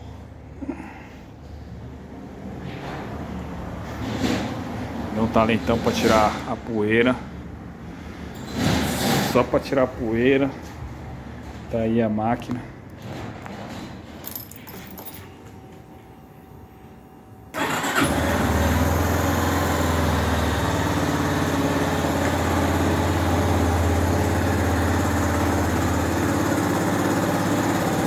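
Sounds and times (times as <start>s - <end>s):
motorcycle engine starting and idling: 17.5s - 28.0s.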